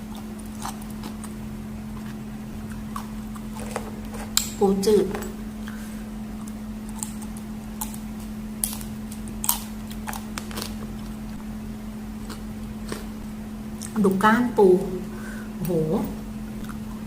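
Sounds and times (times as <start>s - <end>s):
clicks and crunches of eating: 0.0s - 4.6s, 6.4s - 11.4s, 12.2s - 13.2s
steady electrical hum: 0.0s - 17.0s.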